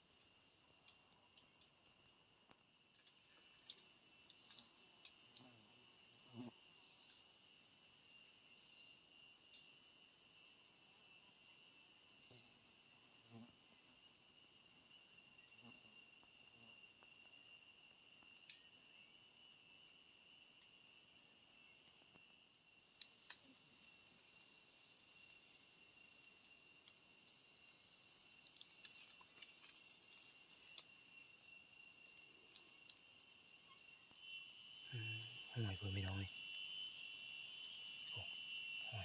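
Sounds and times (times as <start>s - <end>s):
forest insects calling: 0.0s - 39.0s
louder insect call: 0.0s - 39.0s
faint ticks: 0.8s - 1.8s, 2.4s - 5.6s, 22.9s - 23.5s, 30.6s - 31.0s, 32.4s - 33.1s.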